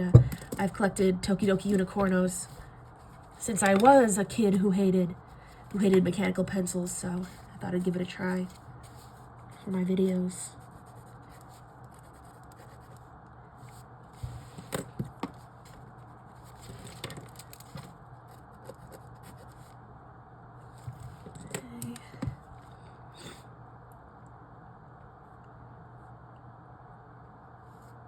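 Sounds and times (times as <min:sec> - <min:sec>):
pencil scratching on paper: 0:10.5 - 0:13.0.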